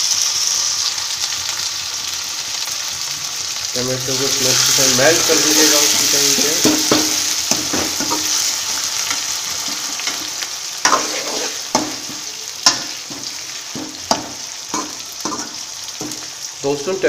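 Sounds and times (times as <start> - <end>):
vegetables sizzling in oil: 0.0 - 17.0
spatula knocking against pan: 6.6 - 8.4, 11.7 - 16.3.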